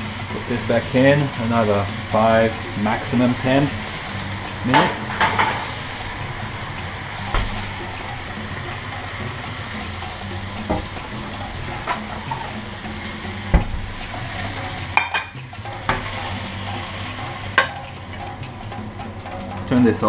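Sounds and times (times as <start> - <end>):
chicken sizzling in a pan: 0.0 - 19.2
cookware knocks and clinks: 4.8 - 5.6, 15.0 - 16.1.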